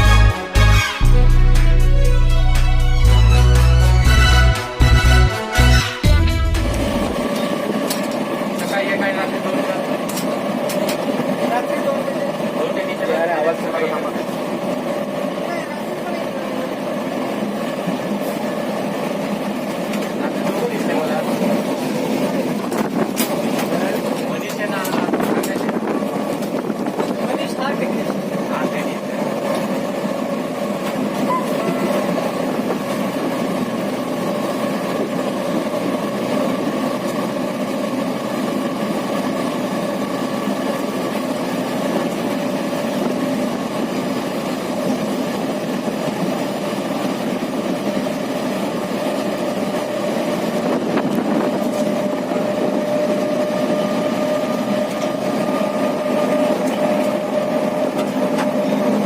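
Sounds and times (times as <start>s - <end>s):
engine running steadily: 0.0s - 59.0s.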